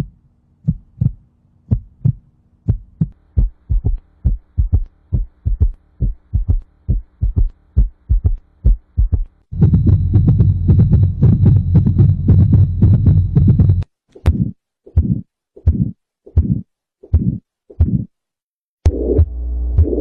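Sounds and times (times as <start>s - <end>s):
faint steady hum: 0.0s - 13.9s
heartbeat: 0.0s - 18.1s, 18.9s - 20.0s
loud low rumbling noise: 9.6s - 13.8s.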